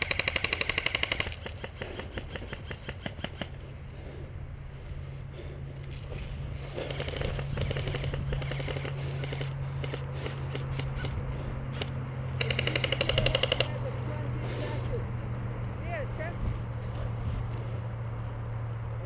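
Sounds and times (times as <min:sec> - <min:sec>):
airsoft guns firing: 0:00.0 - 0:03.6, 0:06.8 - 0:11.8, 0:12.4 - 0:13.7.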